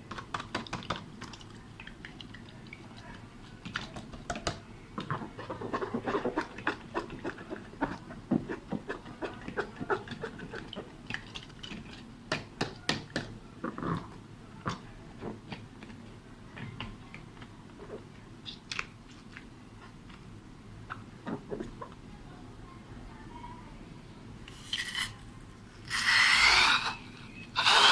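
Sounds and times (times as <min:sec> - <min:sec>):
slime squelching by hand: 0:00.2 - 0:12.1.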